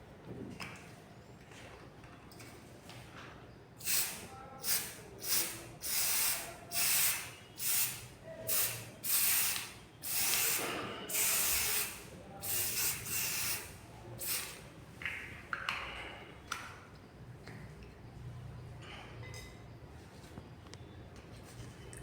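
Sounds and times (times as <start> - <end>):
aerosol can spraying bursts: 3.8 - 14.6.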